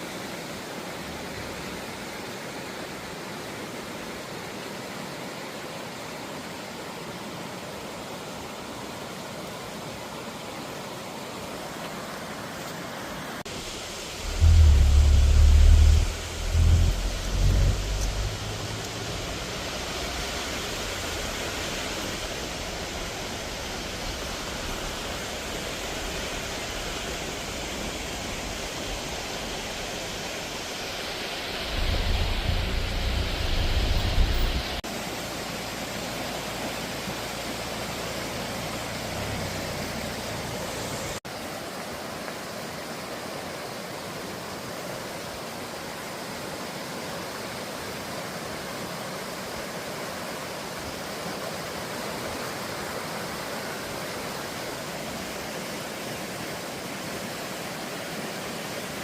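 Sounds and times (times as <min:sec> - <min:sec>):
rushing water: 0:00.0 - 0:59.0
low rumble: 0:13.6 - 0:34.8.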